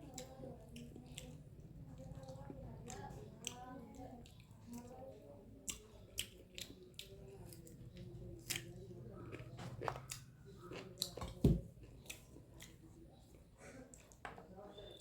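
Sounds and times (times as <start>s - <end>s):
person chewing food: 5.6s - 14.2s.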